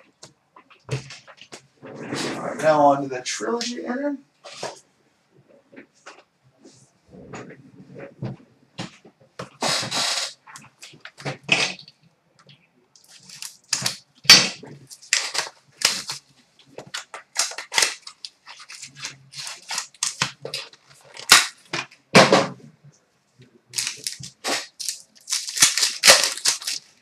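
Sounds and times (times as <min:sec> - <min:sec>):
card pack wrapper crackling: 0:13.0 - 0:14.0, 0:14.9 - 0:16.2, 0:16.8 - 0:21.7, 0:23.8 - 0:27.0
cards being handled: 0:23.8 - 0:27.0.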